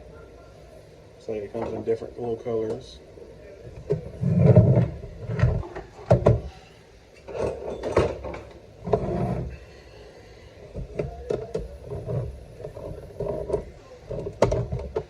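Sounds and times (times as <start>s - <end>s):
radio knocking and scraping on bench: 3.7s - 6.5s, 7.3s - 9.6s, 10.7s - 15.0s.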